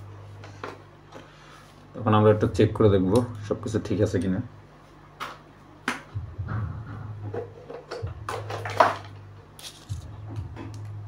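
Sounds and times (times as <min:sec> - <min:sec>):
low hum: 0:06.1 - 0:11.0.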